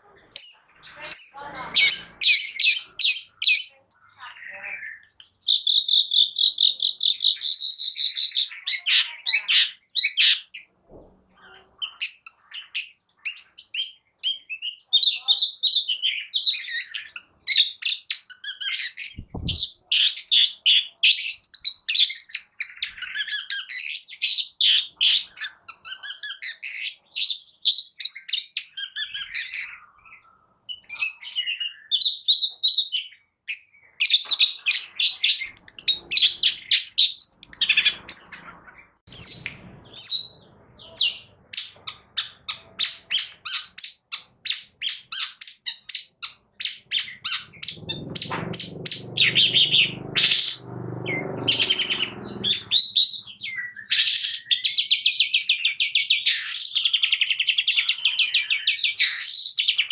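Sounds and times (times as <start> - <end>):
low thump: 19.2 - 19.6
shrike singing harsh chattering: 46.9 - 53.2.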